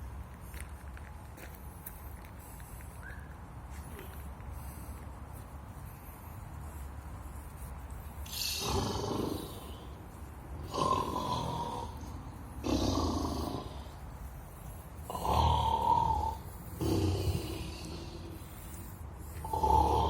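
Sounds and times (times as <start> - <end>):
loud snoring: 8.3 - 10.0, 10.6 - 14.0, 15.0 - 18.5, 19.4 - 20.0.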